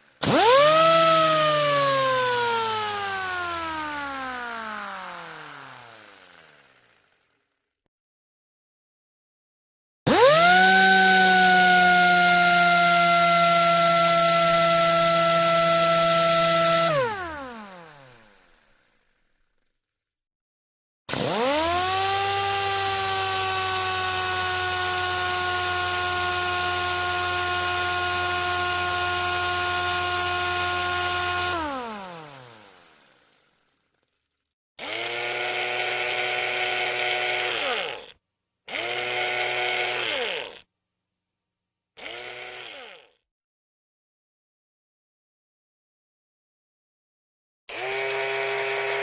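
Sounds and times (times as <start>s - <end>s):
electric screwdriver motor whining: 0.2s - 7.2s, 10.1s - 19.0s, 21.1s - 33.6s, 34.8s - 38.1s, 38.7s - 40.6s, 42.0s - 43.1s, 47.7s - 49.0s.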